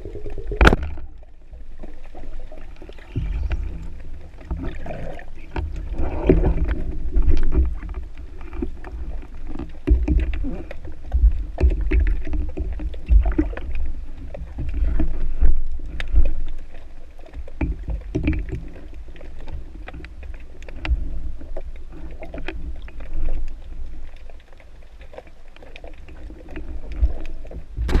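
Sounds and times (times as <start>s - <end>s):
underwater rumbling and sloshing: 0.0s - 28.0s
small clicks and knocks: 5.5s - 15.2s, 17.3s - 28.0s.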